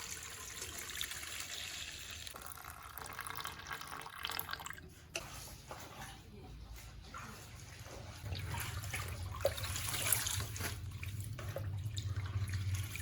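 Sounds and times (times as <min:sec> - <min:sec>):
water pouring into a pot: 0:00.0 - 0:04.8, 0:08.3 - 0:13.0.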